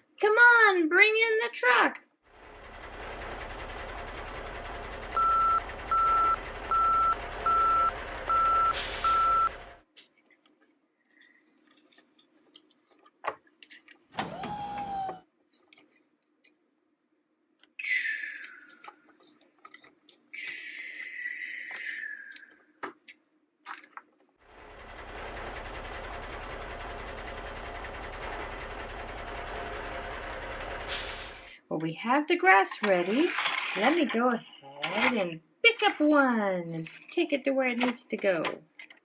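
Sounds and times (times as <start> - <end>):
toy engine sound effect: 4.1 - 9.5
electronic reversing beeps: 5.1 - 9.6.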